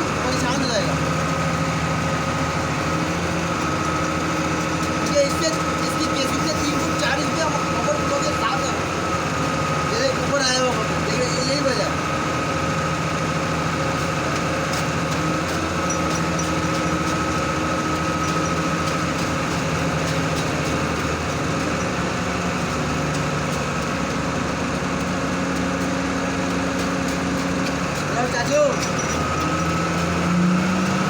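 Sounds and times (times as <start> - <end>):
constant high whine: 0.0 - 30.5
diesel engine idling: 0.0 - 31.0.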